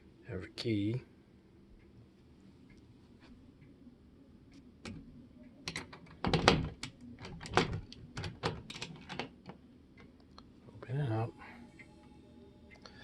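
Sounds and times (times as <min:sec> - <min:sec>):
metallic clicks and rattles: 0:05.6 - 0:09.6
key clicking in a lock: 0:05.7 - 0:09.3.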